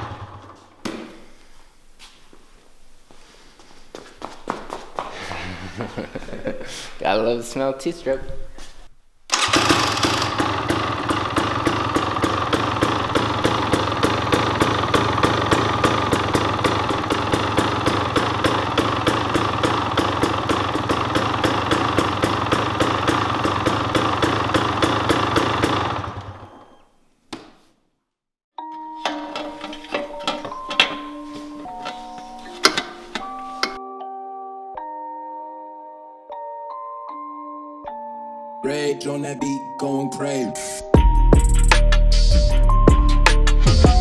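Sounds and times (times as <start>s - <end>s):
two-stroke engine idling: 0.0s - 0.6s, 9.3s - 26.8s.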